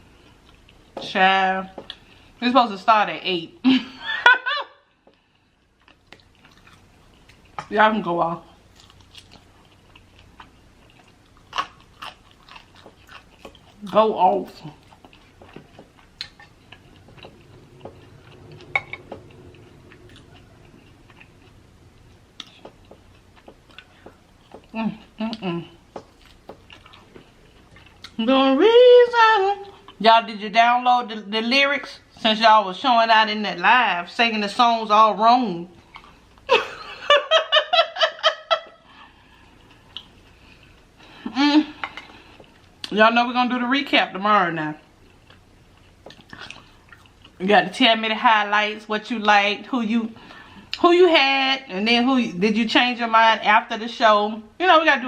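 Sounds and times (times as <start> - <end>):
person chewing food: 0.1 - 1.0, 5.1 - 7.7, 8.5 - 14.0, 14.6 - 28.2, 35.8 - 36.5, 38.6 - 42.9, 44.9 - 47.4
woman laughing: 3.6 - 4.8, 36.5 - 38.8, 41.3 - 41.8.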